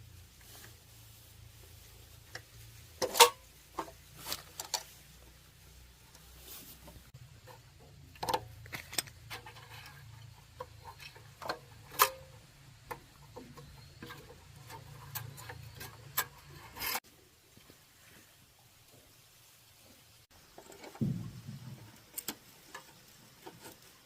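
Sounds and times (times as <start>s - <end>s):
small parts and tools clicking: 7.4s - 17.0s.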